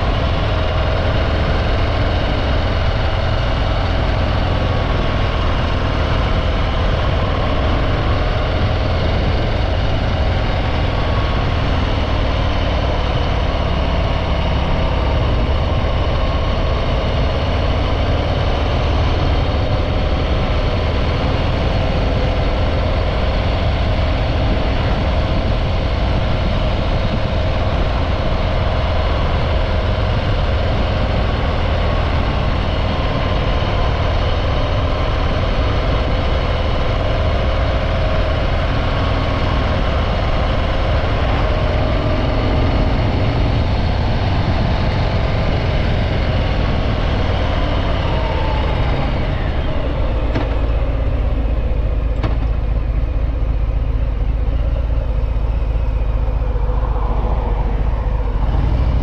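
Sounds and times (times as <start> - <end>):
motorcycle engine running: 0.0 - 59.0.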